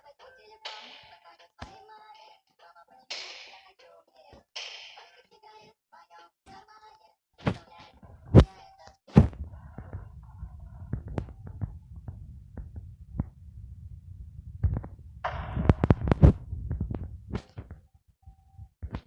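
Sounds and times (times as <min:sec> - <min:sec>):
low rumble: 0:09.3 - 0:17.4
irregular knocks and clicks: 0:14.6 - 0:17.8, 0:18.8 - 0:19.0.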